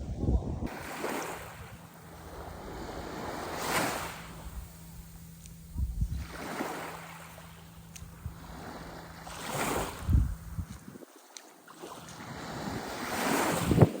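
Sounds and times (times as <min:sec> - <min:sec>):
low buffeting: 0:00.0 - 0:11.2
sea waves washing in: 0:00.6 - 0:14.0.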